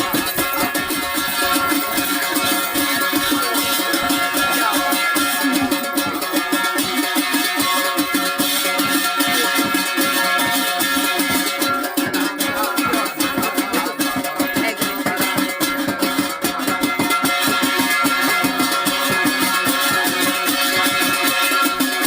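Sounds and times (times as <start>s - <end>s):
instrumental folk music: 0.0s - 22.0s.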